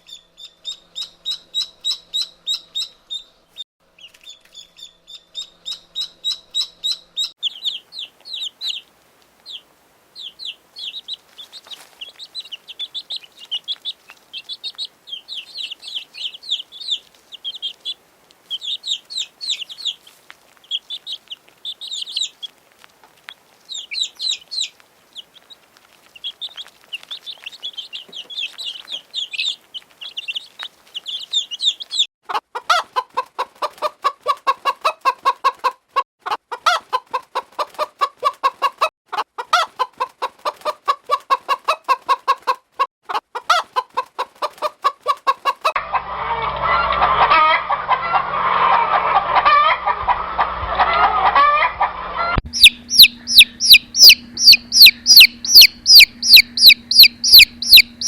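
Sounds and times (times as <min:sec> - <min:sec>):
chicks chirping: 0:00.0 - 0:32.1, 0:43.8 - 0:58.0
poultry flock din: 0:00.0 - 0:58.0
hens clucking: 0:05.1 - 0:58.0.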